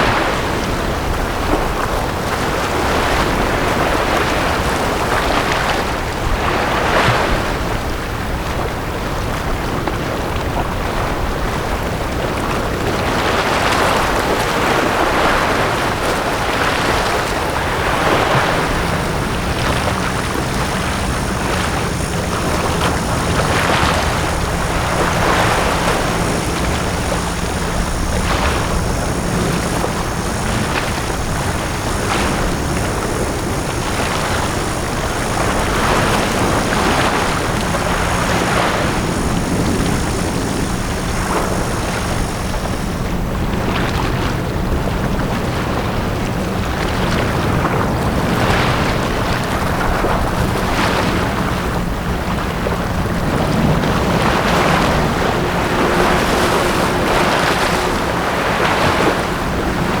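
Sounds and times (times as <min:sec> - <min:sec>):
high steady whine: 0:00.0 - 1:00.0
sea waves breaking on beach: 0:00.0 - 1:00.0
steady low hum: 0:00.0 - 1:00.0.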